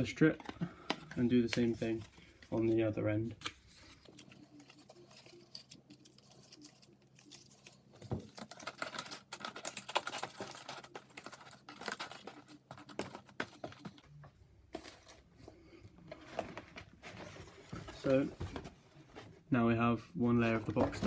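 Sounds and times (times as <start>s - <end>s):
cardboard strips tapping and scraping: 3.4s - 14.0s.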